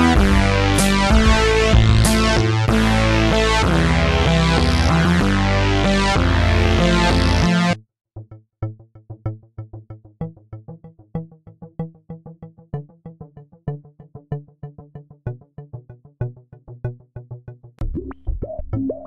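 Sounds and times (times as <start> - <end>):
low bass line: 0.0 - 7.8
synthesizer riff: 0.0 - 7.8, 17.8 - 19.0.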